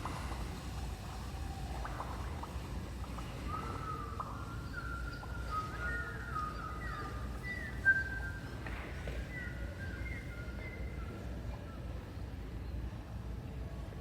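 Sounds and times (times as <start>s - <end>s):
children whistling bird calls: 3.1s - 12.0s.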